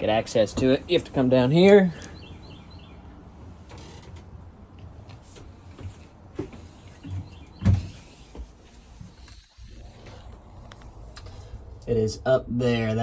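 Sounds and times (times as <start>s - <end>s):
knocks and thumps of handling: 5.1s - 9.2s.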